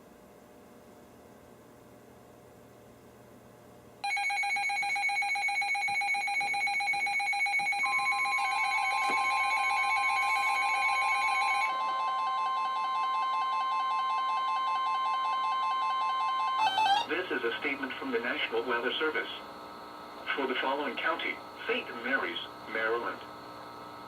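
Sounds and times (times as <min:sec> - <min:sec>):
steady warning alarm tone: 0:04.0 - 0:24.0.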